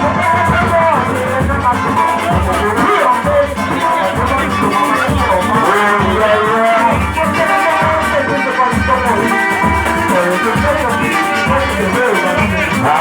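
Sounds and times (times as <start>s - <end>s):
band music: 0.0s - 13.0s
deep drum beat: 0.0s - 13.0s
shakers: 0.0s - 13.0s.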